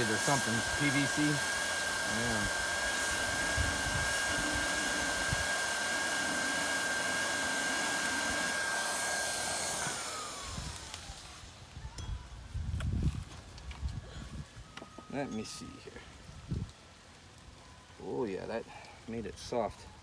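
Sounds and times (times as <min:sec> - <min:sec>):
hot-air gun fan whine: 0:00.0 - 0:15.4.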